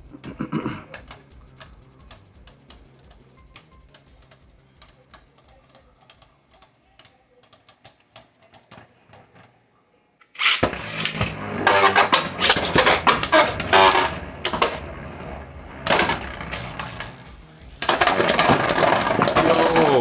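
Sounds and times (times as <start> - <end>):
spinning tops clicking together: 0.0 - 8.4, 10.4 - 20.0
rattling clatter and scraping: 10.4 - 20.0.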